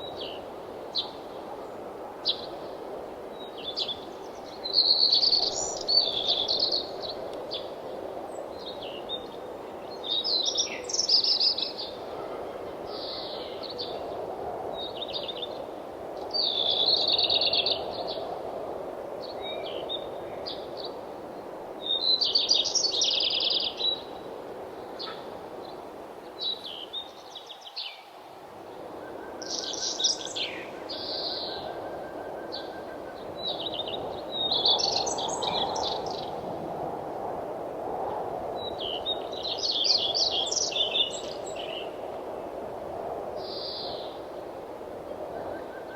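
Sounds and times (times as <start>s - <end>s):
songbirds chirping: 19.2s - 36.4s.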